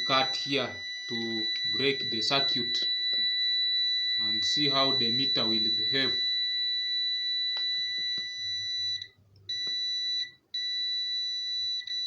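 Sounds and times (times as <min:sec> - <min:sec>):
multimeter continuity beep: 0:00.0 - 0:12.0
faint clicks of probes: 0:07.3 - 0:08.4.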